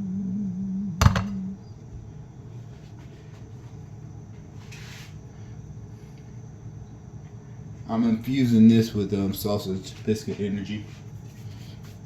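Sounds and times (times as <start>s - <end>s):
person humming: 0.0s - 1.6s.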